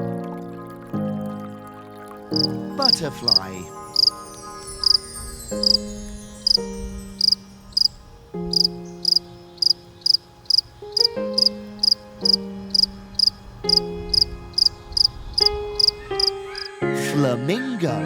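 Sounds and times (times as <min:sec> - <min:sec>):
background music of held chords: 0:00.0 - 0:18.0
cricket chirping: 0:02.4 - 0:16.7.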